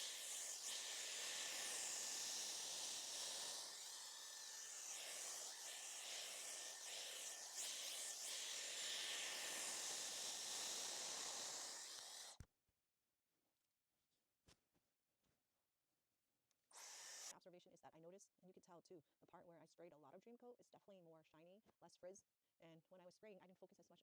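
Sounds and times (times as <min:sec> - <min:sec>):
hair dryer blowing: 0:00.0 - 0:12.4, 0:16.8 - 0:17.3.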